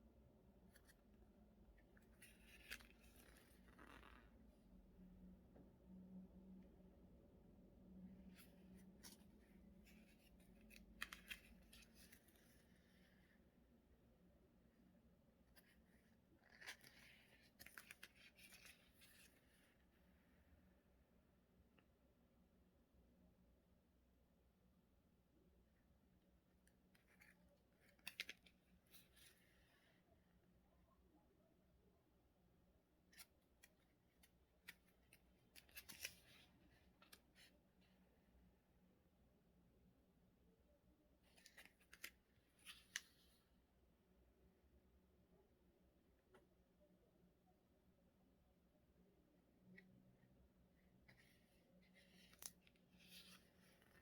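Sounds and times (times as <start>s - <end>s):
paper clicks and rustles: 8.3s - 12.8s, 16.4s - 19.5s, 27.0s - 29.4s, 33.1s - 37.5s, 51.1s - 54.0s.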